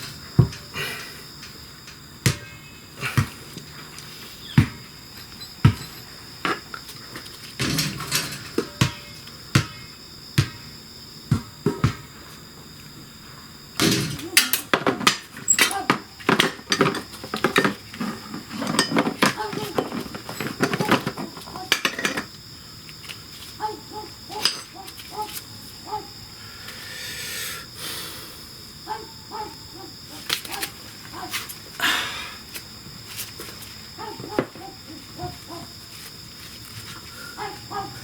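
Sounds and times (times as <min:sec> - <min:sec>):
metal tools knocking and clinking: 0:13.8 - 0:17.8, 0:18.4 - 0:22.3, 0:24.4 - 0:24.8.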